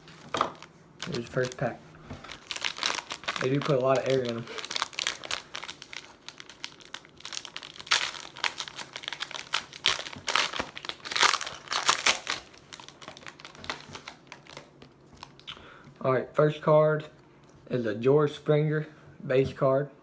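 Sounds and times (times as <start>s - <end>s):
foil wrapper crinkling and tearing: 0.0s - 15.5s.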